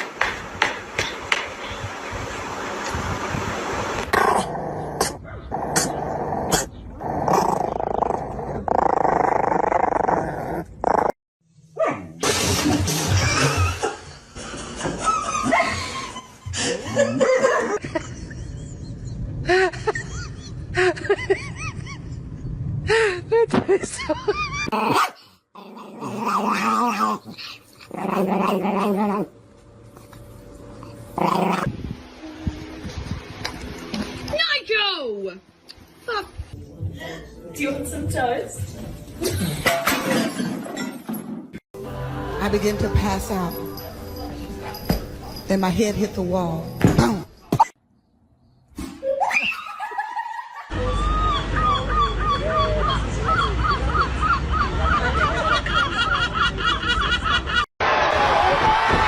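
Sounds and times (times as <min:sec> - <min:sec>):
dog growling: 0:04.1 - 0:11.2, 0:24.7 - 0:29.4, 0:30.9 - 0:31.8.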